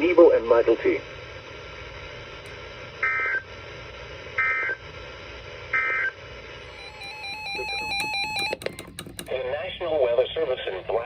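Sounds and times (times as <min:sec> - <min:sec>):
faint radio hiss: 0:00.0 - 0:08.0, 0:09.3 - 0:11.0
warbling digital data tones: 0:06.6 - 0:08.8.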